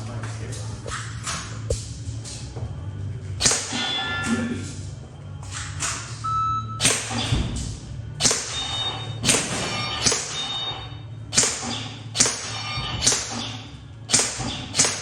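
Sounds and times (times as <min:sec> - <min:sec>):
steady low hum: 0:00.0 - 0:15.0
airsoft gun shots: 0:03.4 - 0:03.9, 0:06.8 - 0:07.5, 0:08.2 - 0:10.6, 0:11.3 - 0:15.0.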